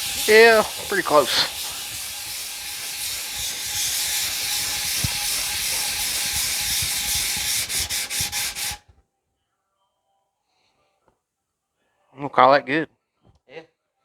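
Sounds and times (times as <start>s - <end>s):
scratchy sanding on sandpaper: 0.0s - 8.8s.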